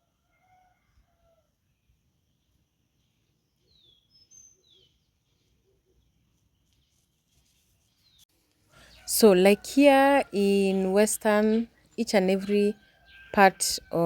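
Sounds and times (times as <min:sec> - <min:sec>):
faint bird chirps: 0:00.4 - 0:09.1.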